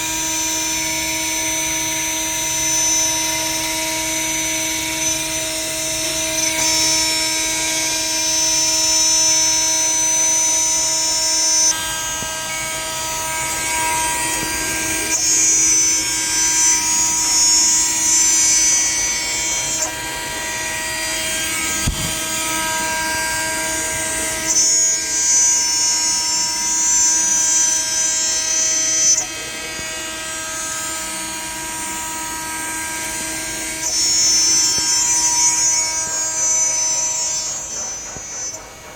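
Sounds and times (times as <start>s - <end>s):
router spindle high whine: 0.0s - 38.9s
bit cutting material hiss: 33.8s - 38.9s.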